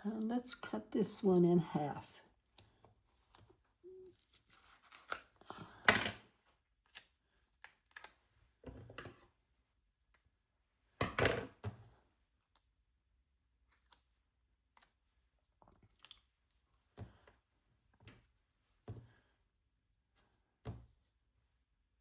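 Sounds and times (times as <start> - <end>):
paper rustling: 3.2 - 5.4.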